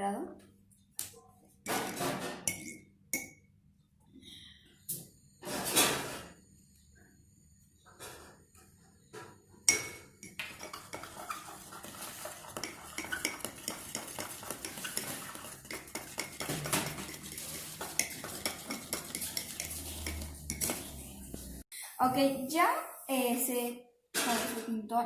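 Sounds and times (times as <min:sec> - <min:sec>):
utensil clinking against bowl: 0:02.4 - 0:03.4, 0:12.4 - 0:20.8.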